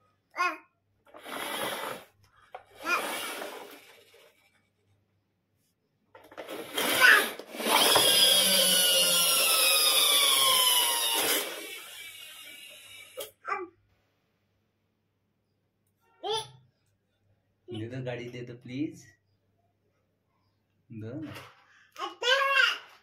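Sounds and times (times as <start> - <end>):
toy car whirring whine: 1.1 - 4.8, 6.2 - 13.4
toy car scraping on floor: 1.1 - 4.9, 6.2 - 8.4.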